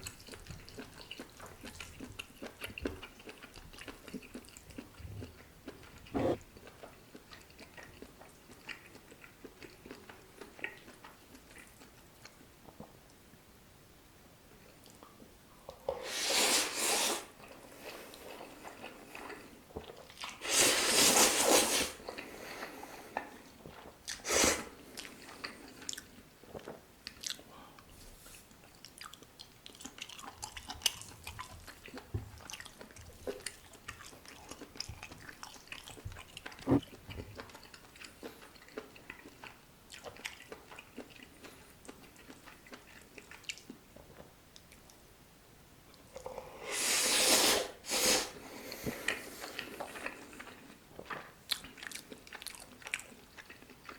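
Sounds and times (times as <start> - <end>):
chewing noodles with wet clicks: 0.0 - 12.9, 17.4 - 20.4, 24.9 - 27.5, 28.6 - 45.0, 48.8 - 53.9.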